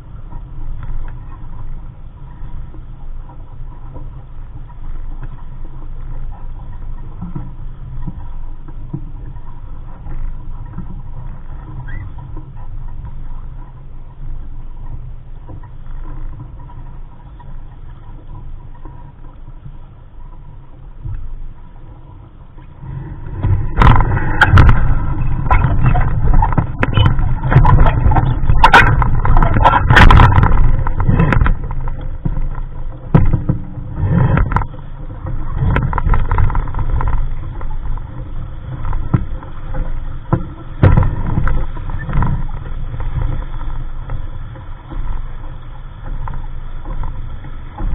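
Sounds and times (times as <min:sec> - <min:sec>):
water splashing against hull: 0:00.0 - 0:47.9
wind buffeting microphone: 0:17.9 - 0:47.9.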